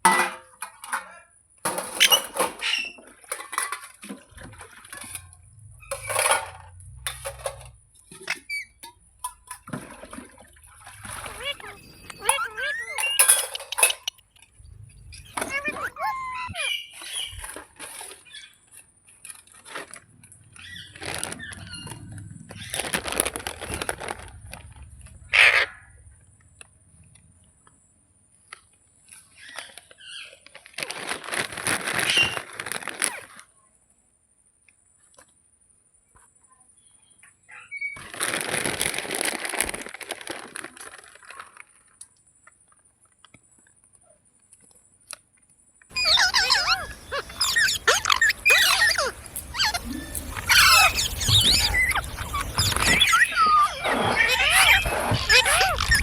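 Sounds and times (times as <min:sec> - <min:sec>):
parrot squawk: 0:11.2 - 0:14.1, 0:15.2 - 0:17.2, 0:45.9 - 0:56.0.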